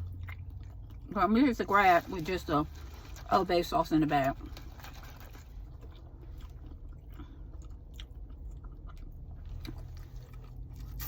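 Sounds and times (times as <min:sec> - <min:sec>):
person chewing: 0:00.0 - 0:01.2, 0:04.4 - 0:11.0.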